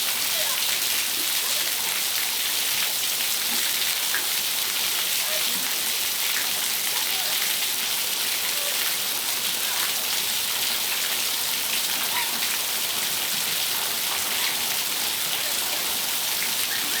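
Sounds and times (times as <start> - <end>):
rain on hard surfaces: 0.0 - 17.0.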